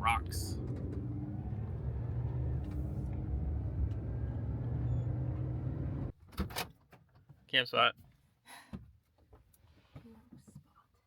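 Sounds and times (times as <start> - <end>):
engine and tyre drone inside cabin: 0.0 - 6.1.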